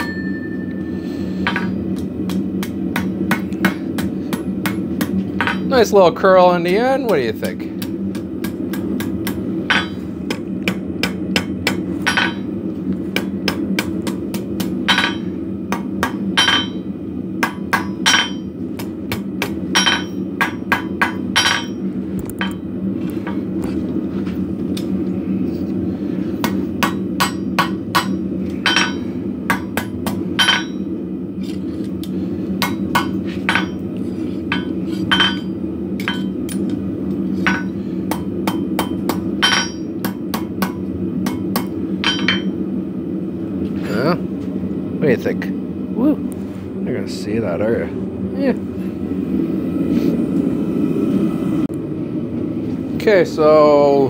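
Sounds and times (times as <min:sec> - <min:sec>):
hammer striking metal on anvil: 0:00.0 - 0:05.9, 0:06.6 - 0:12.5, 0:13.2 - 0:21.8, 0:26.4 - 0:30.9, 0:32.6 - 0:33.9, 0:34.5 - 0:36.8, 0:37.4 - 0:42.6
steady low hum: 0:00.0 - 0:54.0.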